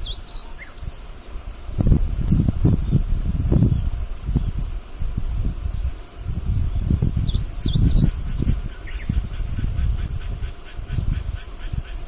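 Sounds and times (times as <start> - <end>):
high insect drone: 0.0 - 12.0.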